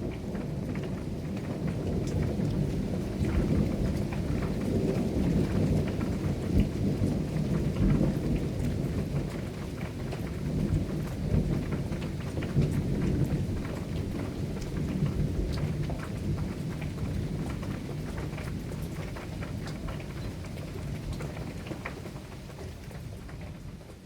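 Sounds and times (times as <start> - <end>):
rain drops ticking: 0.0 - 24.0
rain low rumble: 0.0 - 24.0.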